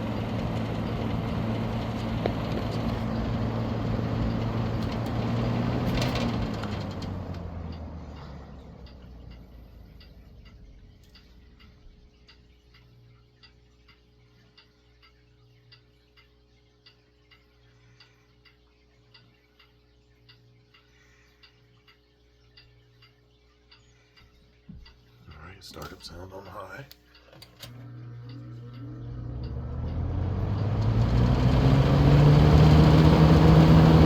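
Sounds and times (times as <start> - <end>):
light even ticking: 6.7 - 31.0
faint steady hum: 7.3 - 30.7.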